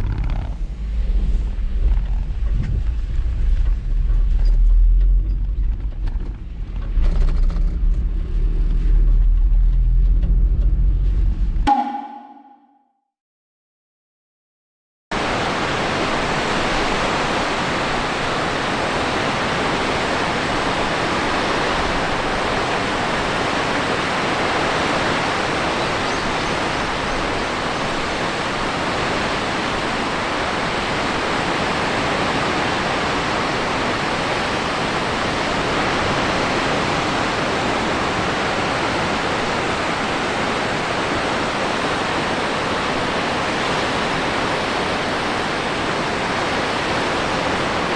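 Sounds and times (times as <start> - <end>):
heavy surf: 15.2 - 47.9.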